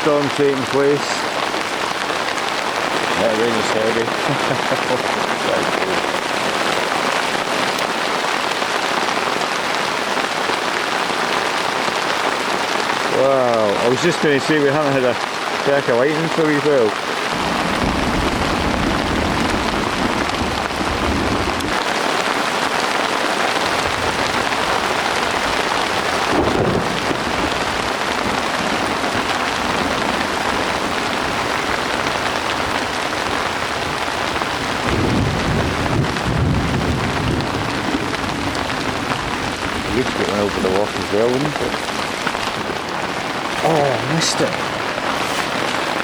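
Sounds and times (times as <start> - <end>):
heavy rain falling: 0.0 - 46.0
thunder rumbling: 17.3 - 22.0, 23.6 - 46.0.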